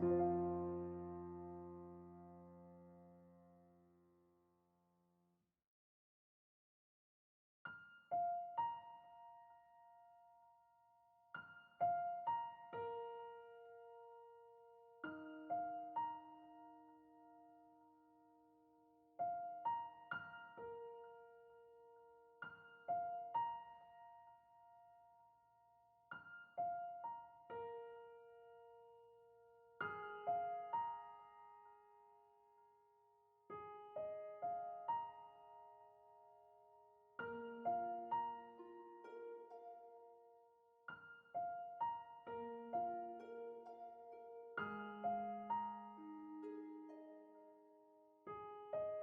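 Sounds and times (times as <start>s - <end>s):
slow piano melody: 0.0s - 4.0s, 7.7s - 49.0s.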